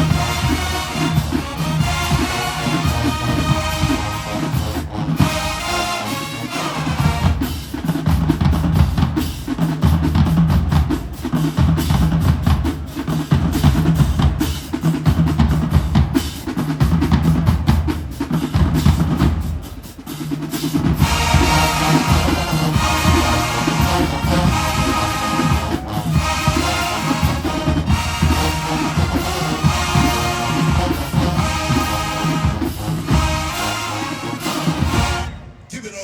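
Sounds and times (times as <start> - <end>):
brass chords: 0.0 - 9.4, 20.9 - 36.0
snare drum strokes and rolls: 0.0 - 35.9.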